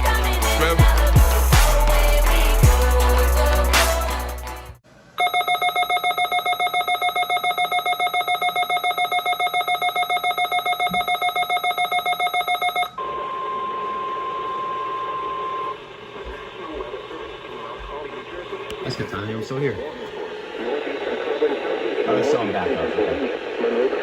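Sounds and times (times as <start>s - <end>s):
steady single-pitch alarm tone: 5.2s - 15.8s
rapidly pulsing electronic alarm: 5.2s - 24.0s.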